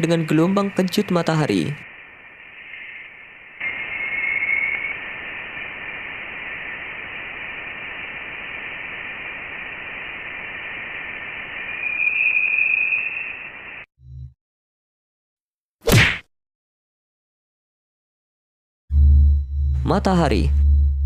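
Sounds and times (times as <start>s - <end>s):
radio-like hiss with high tone: 0.0s - 13.9s.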